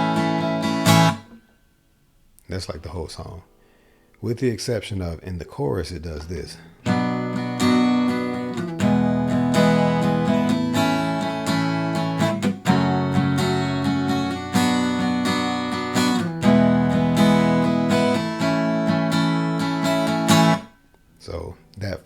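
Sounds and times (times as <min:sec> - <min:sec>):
acoustic guitar strumming chords: 0:00.0 - 0:01.6, 0:06.4 - 0:20.9.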